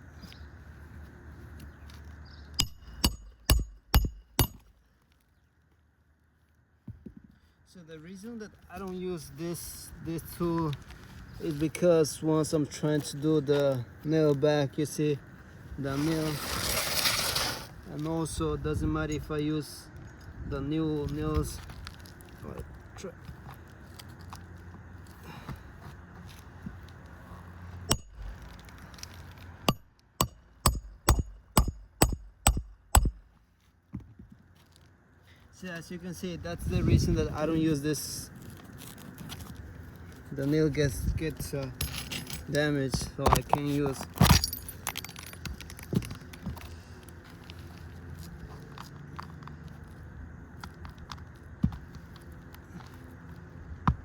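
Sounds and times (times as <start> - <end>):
hammer striking shingle roof: 2.6 - 4.7, 29.7 - 33.2.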